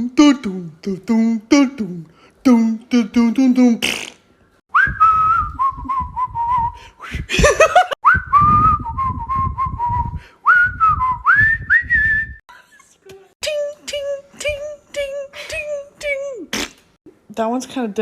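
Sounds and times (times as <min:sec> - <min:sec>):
squeaky vocal noise: 0:03.0 - 0:04.3, 0:13.4 - 0:17.0
person whistling: 0:04.7 - 0:07.3, 0:08.0 - 0:12.4.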